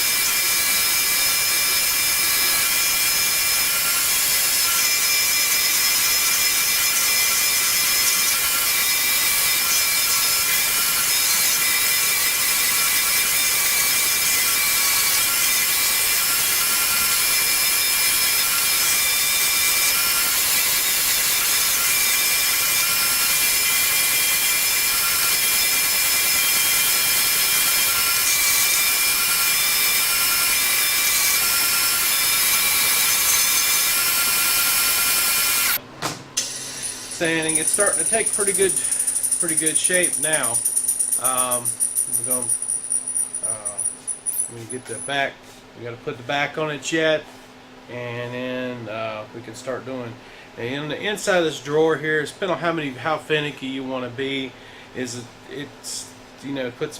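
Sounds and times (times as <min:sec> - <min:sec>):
power sander on wood: 0:00.0 - 0:35.8, 0:36.4 - 0:42.6.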